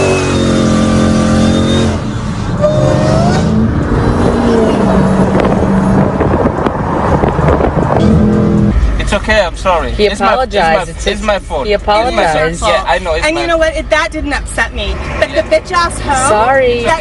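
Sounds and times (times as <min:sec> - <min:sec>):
vehicle engine revving: 0:00.0 - 0:09.6.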